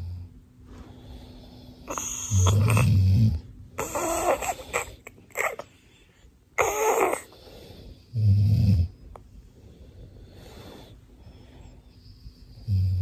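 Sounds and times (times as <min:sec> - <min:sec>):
man snoring: 0:01.8 - 0:05.0, 0:08.1 - 0:08.9, 0:12.6 - 0:13.0
baby copying a snore: 0:01.9 - 0:05.7, 0:06.6 - 0:07.4.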